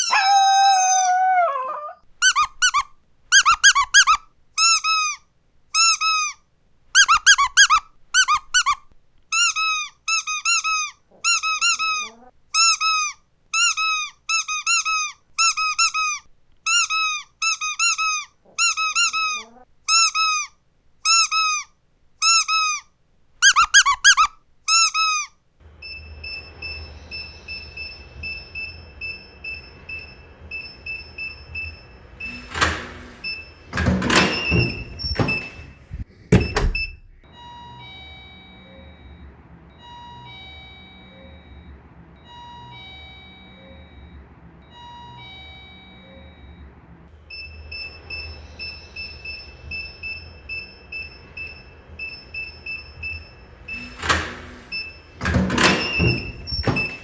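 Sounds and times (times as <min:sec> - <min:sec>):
squeaky dog toy squeezed: 0:00.0 - 0:05.2, 0:07.0 - 0:25.4.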